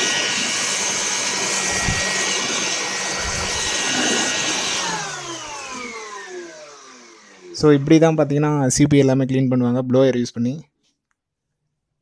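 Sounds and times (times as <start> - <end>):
electric air blower running: 0.0 - 8.4.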